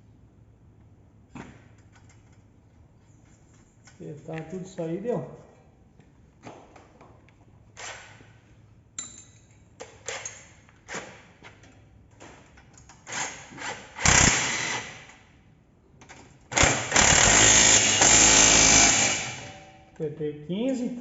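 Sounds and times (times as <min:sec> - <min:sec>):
impact wrench hammering: 0:16.5 - 0:19.8.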